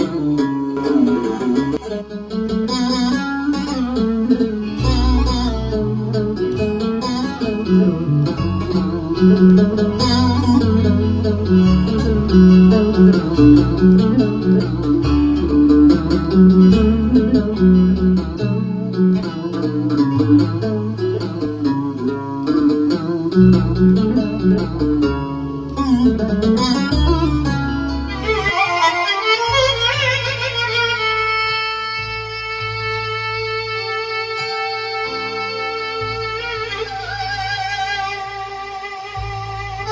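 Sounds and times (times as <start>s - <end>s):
bass line: 0.0s - 39.9s
plucked string melody: 0.0s - 39.9s.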